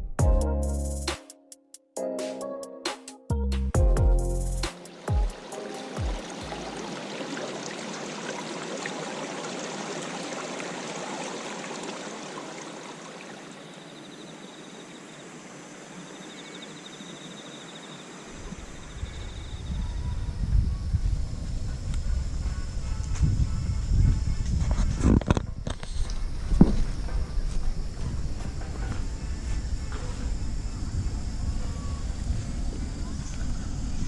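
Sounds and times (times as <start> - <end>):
stream water flowing: 4.7 - 18.8.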